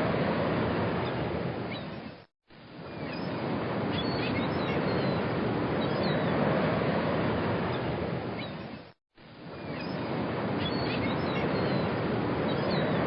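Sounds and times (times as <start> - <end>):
sea surf washing: 0.0 - 1.6, 3.4 - 8.3, 10.0 - 13.0.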